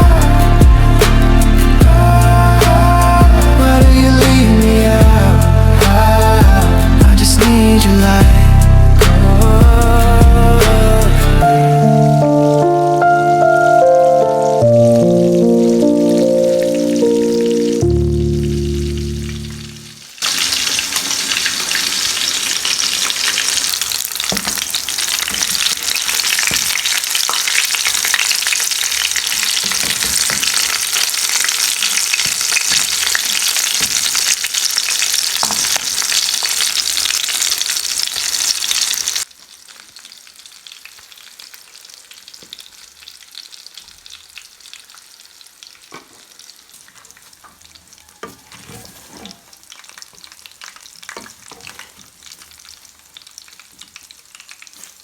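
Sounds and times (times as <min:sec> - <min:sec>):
food sizzling in a pan: 0:11.5 - 0:55.0.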